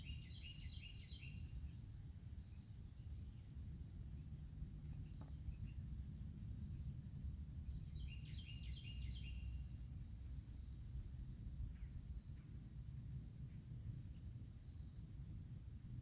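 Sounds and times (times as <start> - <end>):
faint bird chirps: 0.0 - 6.9, 7.6 - 12.7
low background rumble: 0.0 - 16.0
songbird singing: 0.0 - 16.0.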